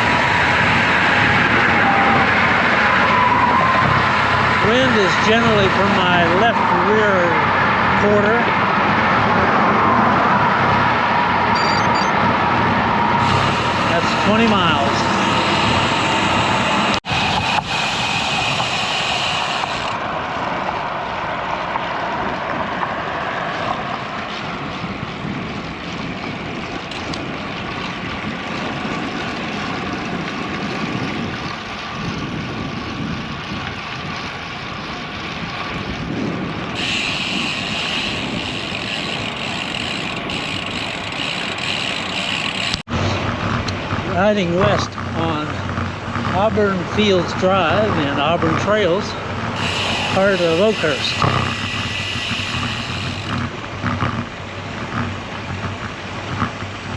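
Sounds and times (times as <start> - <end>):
bicycle tyre road noise: 0.0 - 56.9
wind rush on microphone: 0.0 - 56.9.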